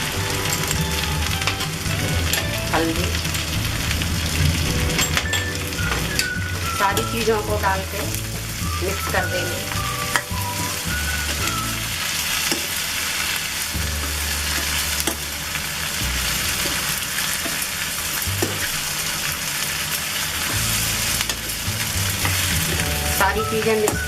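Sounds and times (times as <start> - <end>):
vegetables sizzling in oil: 0.0 - 24.0.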